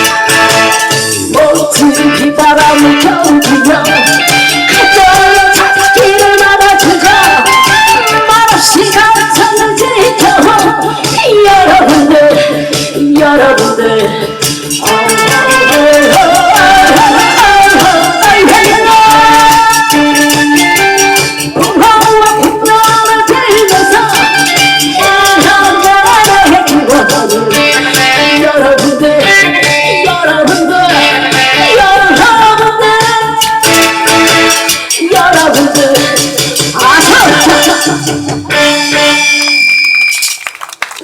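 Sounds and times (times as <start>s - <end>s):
loud music with fast beat: 0.0s - 39.6s.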